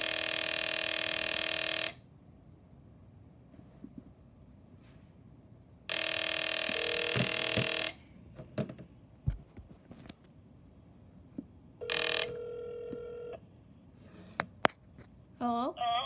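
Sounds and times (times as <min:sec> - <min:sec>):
rotary telephone ringing: 0:00.0 - 0:02.0, 0:05.9 - 0:08.0, 0:11.8 - 0:13.4.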